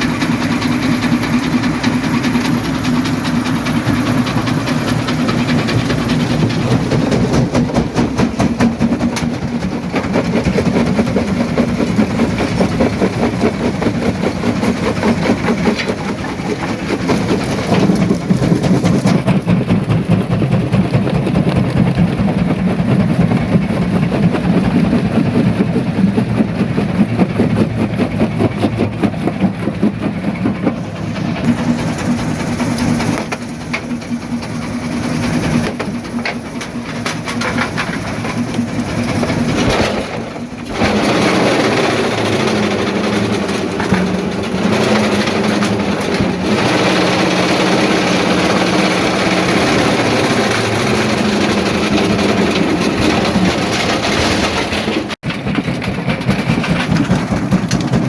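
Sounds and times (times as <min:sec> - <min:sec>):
jaw crusher rumbling: 0:00.0 - 0:58.0
stone rattling and knocking: 0:48.3 - 0:58.0.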